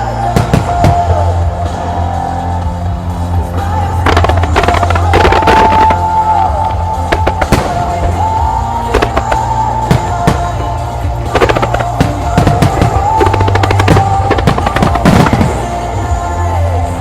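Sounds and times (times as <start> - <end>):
loud rock music over speakers: 0.0 - 17.0
firework shells bursting: 4.0 - 15.9.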